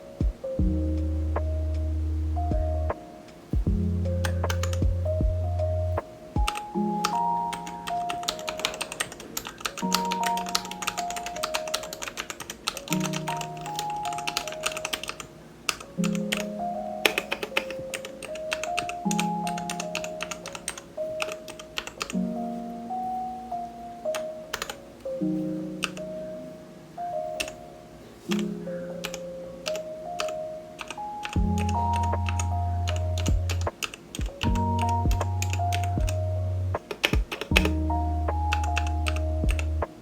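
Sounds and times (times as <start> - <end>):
gentle background music: 0.0 - 40.0
mechanical keyboard clicks: 6.4 - 16.5, 36.8 - 37.8, 38.5 - 39.7.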